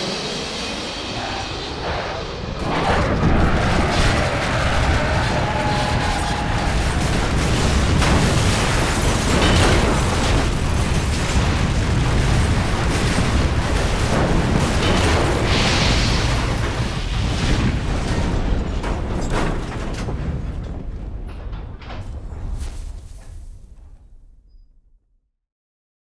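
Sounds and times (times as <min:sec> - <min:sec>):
high whine: 0:00.0 - 0:11.4
explosion rumble: 0:00.9 - 0:24.1
loud blasts: 0:01.0 - 0:19.2.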